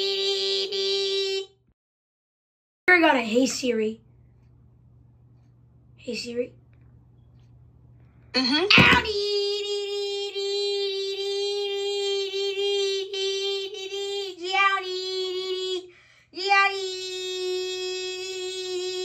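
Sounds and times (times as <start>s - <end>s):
child singing high note: 0.0s - 1.5s, 9.0s - 19.0s.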